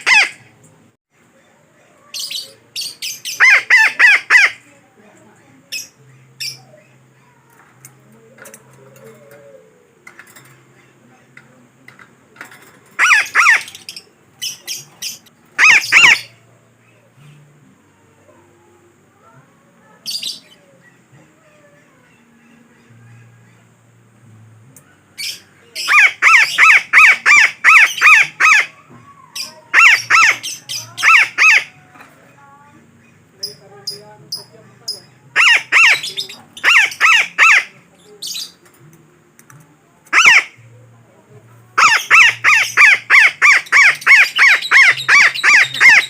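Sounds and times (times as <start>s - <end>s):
parakeet harsh calls: 0.0s - 0.4s, 2.2s - 4.6s, 13.0s - 16.4s, 25.2s - 28.8s, 29.4s - 31.8s, 34.9s - 38.6s, 40.1s - 40.6s, 41.8s - 46.0s.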